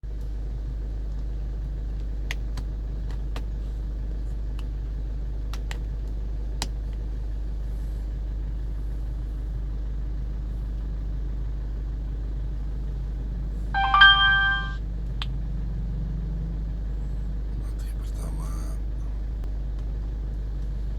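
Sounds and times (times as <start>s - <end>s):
car cabin hum: 0.2s - 10.0s, 17.2s - 20.9s
electronic chime: 13.8s - 14.8s.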